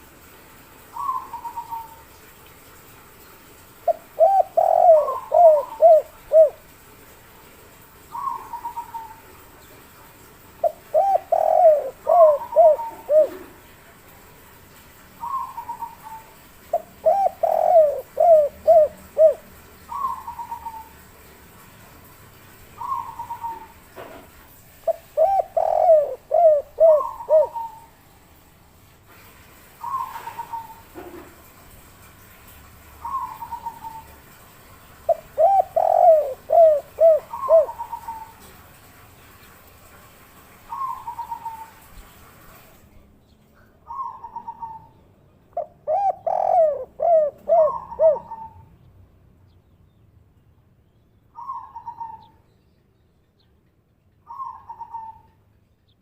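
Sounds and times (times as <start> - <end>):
dove cooing: 0.9 - 2.0, 3.8 - 6.7, 8.1 - 9.3, 10.6 - 13.7, 15.2 - 20.9, 22.8 - 23.8, 24.8 - 27.9, 29.8 - 31.3, 33.0 - 34.2, 35.1 - 38.5, 40.7 - 41.9, 43.9 - 44.9, 45.5 - 48.7, 54.3 - 55.3.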